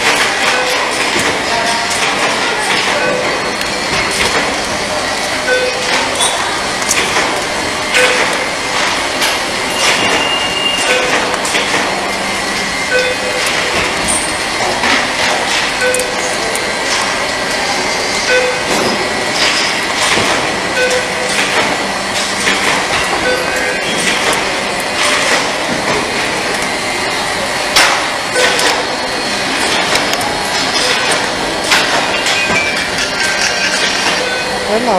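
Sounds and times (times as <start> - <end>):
machine clattering: 0.0 - 34.9
short beeps: 5.5 - 5.9, 9.7 - 11.2, 12.9 - 13.4, 15.8 - 16.3, 18.3 - 18.7, 20.8 - 21.2, 23.2 - 23.8
clicks: 14.8 - 17.1.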